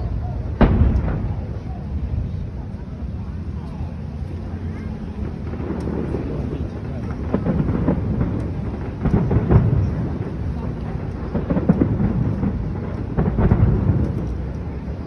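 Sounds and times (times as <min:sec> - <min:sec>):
fireworks booming: 0:00.0 - 0:15.0
fireworks crackling: 0:00.0 - 0:15.0.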